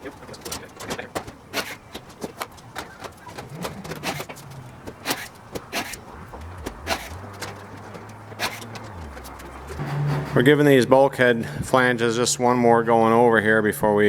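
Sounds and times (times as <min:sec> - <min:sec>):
metal parts and tools clicking: 0:02.7 - 0:09.8.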